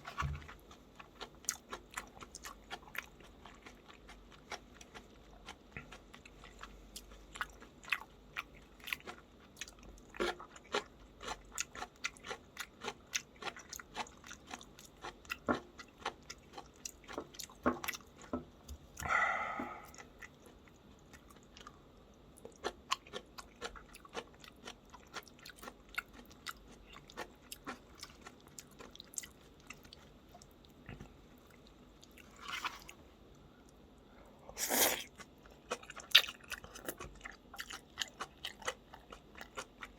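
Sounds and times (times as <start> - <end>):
person chewing crunchy food: 0.0 - 33.8, 34.5 - 39.9.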